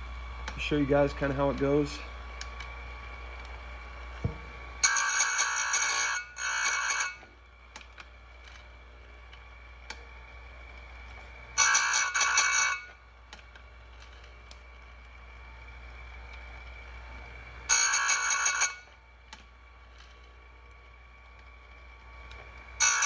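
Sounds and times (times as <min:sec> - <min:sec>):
motor high whine: 0:00.0 - 0:23.0
grinding wheel on saw chain: 0:00.5 - 0:02.2, 0:04.8 - 0:07.3, 0:11.2 - 0:13.0, 0:14.9 - 0:19.0, 0:19.8 - 0:23.0.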